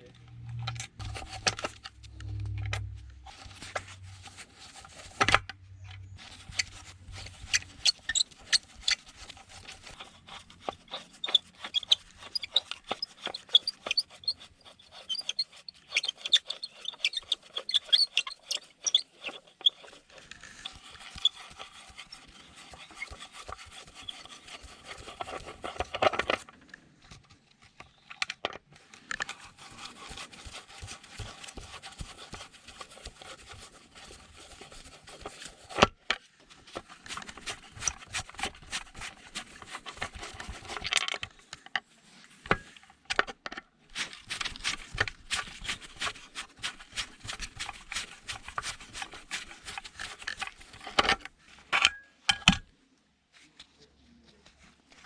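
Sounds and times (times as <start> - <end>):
hand tools scraping metal: 6.0 - 26.0.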